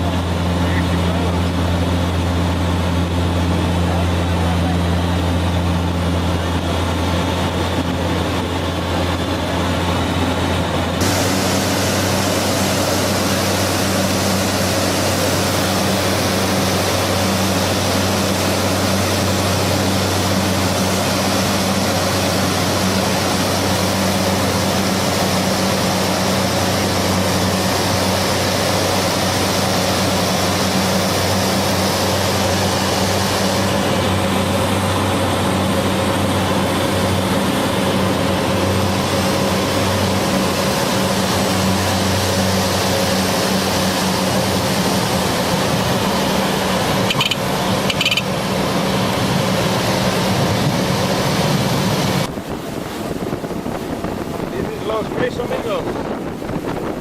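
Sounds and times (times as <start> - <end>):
motor droning: 0.0 - 57.0
rushing hiss: 11.0 - 19.2.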